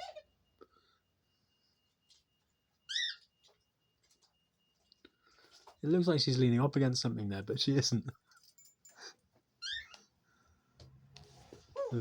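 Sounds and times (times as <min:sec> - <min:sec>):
bird chirp: 0:02.9 - 0:03.4.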